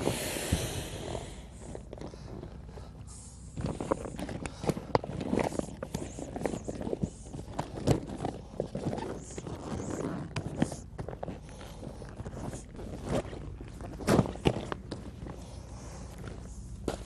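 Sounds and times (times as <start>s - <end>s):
air hissing out: 0.0s - 1.9s.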